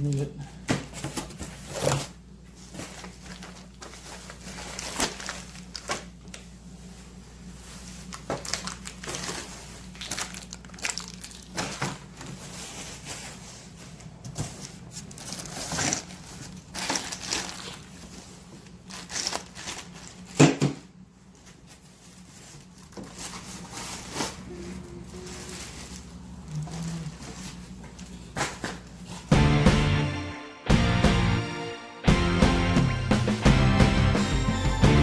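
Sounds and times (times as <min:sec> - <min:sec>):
packaging crinkling and rustling: 0:00.9 - 0:06.5, 0:07.5 - 0:20.4, 0:21.3 - 0:24.4, 0:25.2 - 0:27.8.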